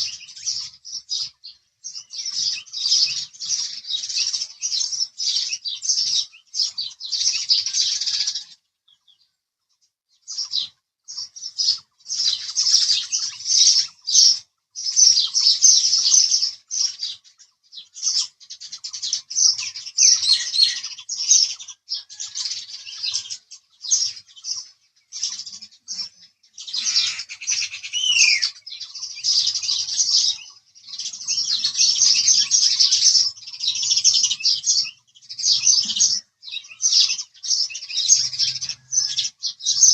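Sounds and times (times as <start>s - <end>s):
sparrows chirping: 0.0s - 39.9s.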